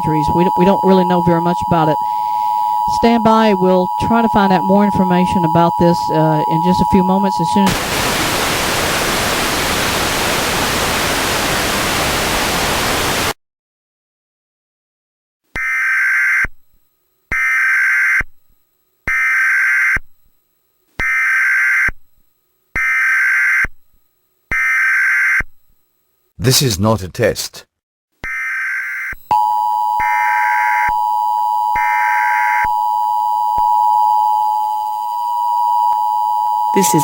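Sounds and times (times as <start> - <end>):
loud broadcast static: 7.7 - 13.4, 26.4 - 27.6.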